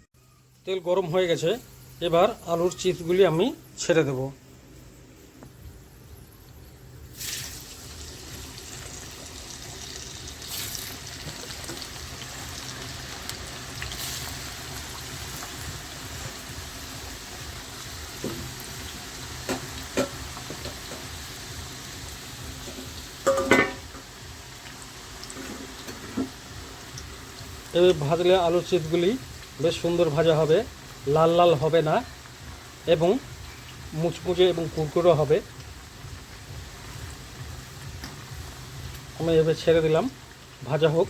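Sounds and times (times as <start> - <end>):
potato slices sizzling in hot oil: 0.6 - 4.2, 6.2 - 41.0.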